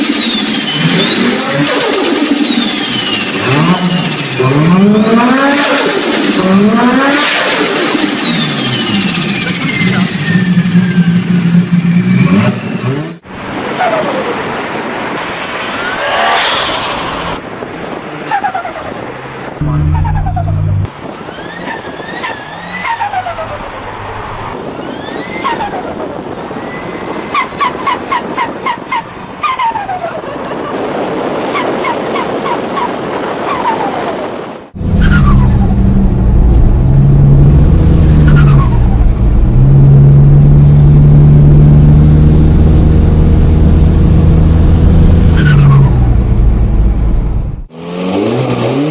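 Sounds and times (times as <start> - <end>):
turbocharged car engine revving: 0.0 - 28.8, 34.7 - 48.9
fluttering turbo compressor surge: 14.3 - 17.6.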